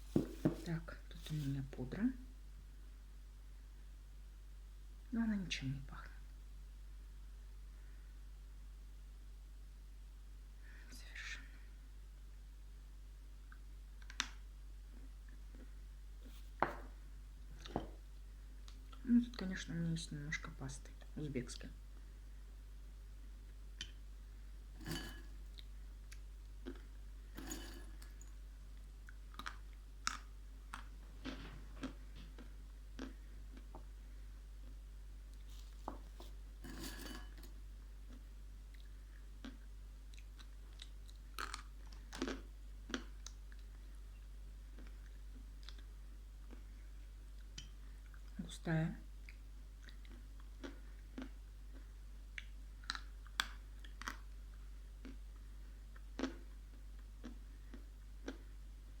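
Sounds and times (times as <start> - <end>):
low steady hum: 0.0 - 59.0
mouth clicks and crunches: 38.1 - 43.7.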